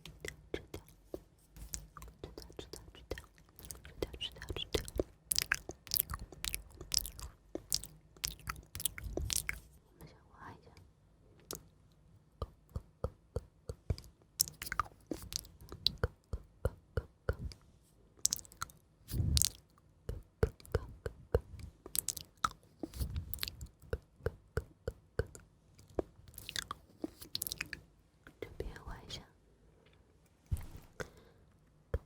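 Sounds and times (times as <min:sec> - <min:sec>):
wet chewing clicks and smacks: 0:00.0 - 0:09.6, 0:12.4 - 0:17.6, 0:18.2 - 0:27.8.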